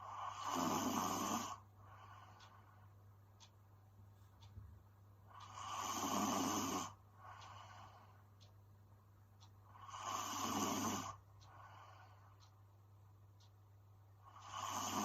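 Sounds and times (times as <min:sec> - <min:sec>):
soft breath: 0:00.0 - 0:03.0, 0:05.3 - 0:08.4, 0:09.7 - 0:12.6
woman snoring: 0:00.1 - 0:01.6, 0:05.5 - 0:07.0, 0:09.8 - 0:11.2, 0:14.4 - 0:15.0.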